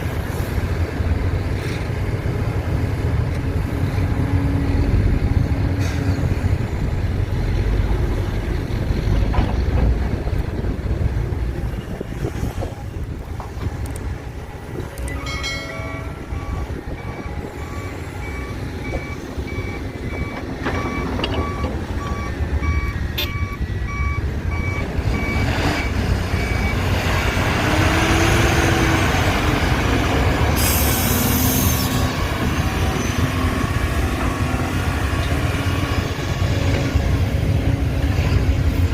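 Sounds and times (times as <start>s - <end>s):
diesel machinery engines running: 0.0s - 38.9s
reversing alarm beeping: 15.0s - 27.0s.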